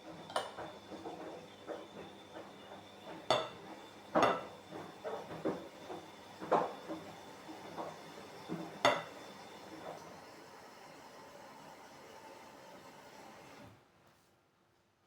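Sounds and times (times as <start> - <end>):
utensils clinking against dishes: 4.2 - 4.6.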